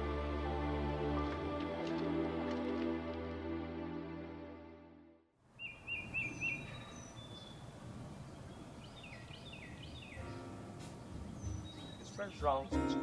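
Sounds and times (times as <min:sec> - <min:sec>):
soft film music: 0:00.0 - 0:05.2, 0:10.0 - 0:13.0
birds chirping: 0:05.5 - 0:13.0
whistled bird notes: 0:05.6 - 0:07.7, 0:08.3 - 0:12.8.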